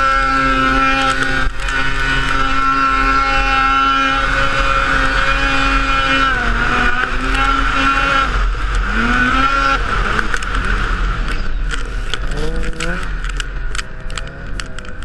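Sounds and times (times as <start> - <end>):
snowmobile engine at high revs: 0.0 - 15.0.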